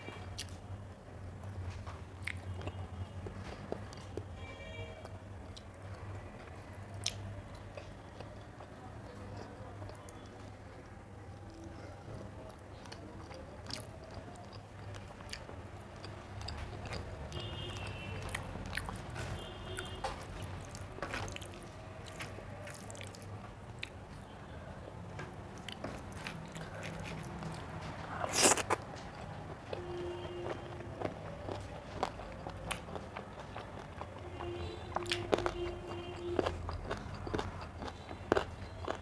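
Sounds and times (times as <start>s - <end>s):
chewing and biting food: 1.4s - 4.3s, 5.4s - 24.3s, 25.2s - 39.0s
wet mouth clicks: 26.6s - 29.2s.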